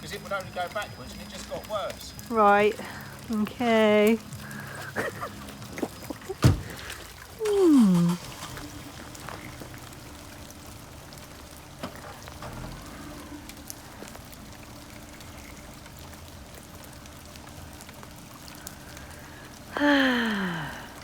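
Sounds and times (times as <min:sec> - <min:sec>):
rain drop ticks: 0:00.0 - 0:21.0
steady rain falling: 0:00.0 - 0:21.0.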